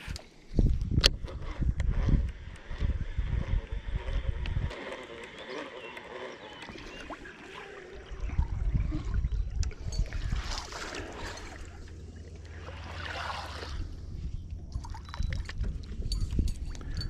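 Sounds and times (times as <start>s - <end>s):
wind buffeting microphone: 0.0s - 5.2s, 7.9s - 17.0s
water splashing: 4.8s - 16.0s
water trickling: 6.6s - 17.0s.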